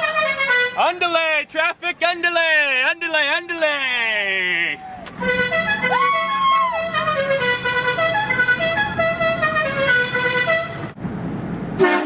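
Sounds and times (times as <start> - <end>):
horn playing a tune: 5.2 - 10.8, 11.8 - 12.0
train horn blast: 6.9 - 10.8, 11.8 - 12.0.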